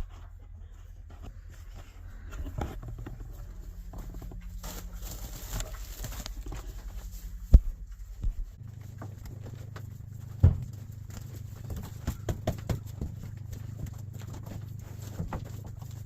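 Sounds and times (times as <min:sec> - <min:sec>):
cattle hooves shuffling: 0:00.0 - 0:16.0.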